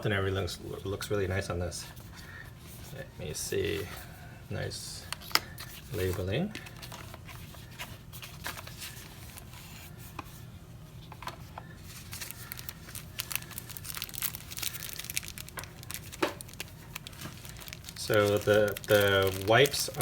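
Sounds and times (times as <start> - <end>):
packaging crinkling and rustling: 5.2 - 9.8, 11.2 - 20.0
small clicks and tears: 11.9 - 20.0.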